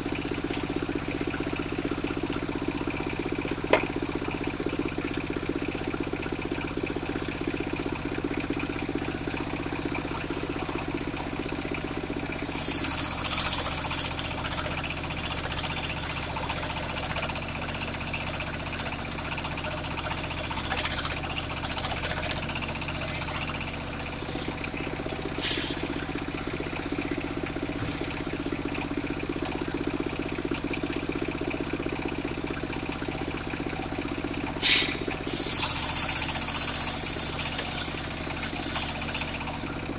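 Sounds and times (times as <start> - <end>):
sawmill engine running: 10.8 - 30.4, 32.7 - 39.9
loud hissing bursts: 12.3 - 24.6, 25.4 - 25.9, 34.6 - 39.7.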